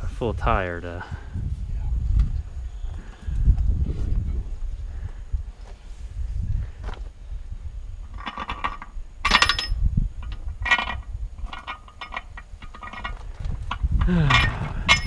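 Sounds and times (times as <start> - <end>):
metal rim clinking and rattling: 8.0 - 15.0.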